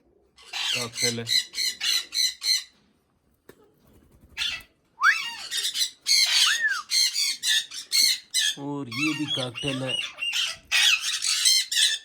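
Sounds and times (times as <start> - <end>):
cockatiels squawking: 0.4 - 2.7, 4.4 - 12.0
whistled bird calls: 5.0 - 7.3.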